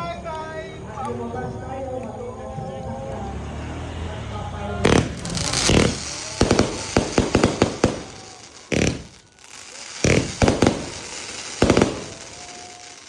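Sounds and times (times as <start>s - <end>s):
firework cake bangs: 4.8s - 13.0s.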